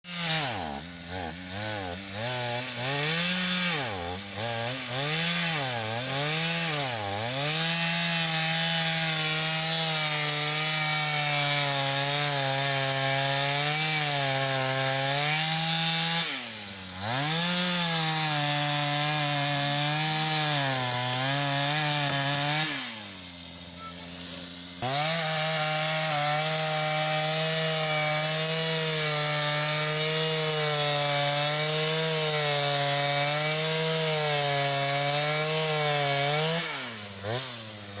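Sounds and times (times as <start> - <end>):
chainsaw engine revving: 0.0 - 38.0.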